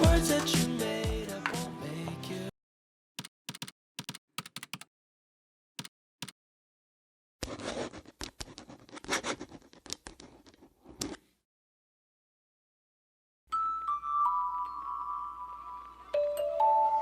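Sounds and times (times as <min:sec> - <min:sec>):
scratching and rustling: 0:07.4 - 0:11.3.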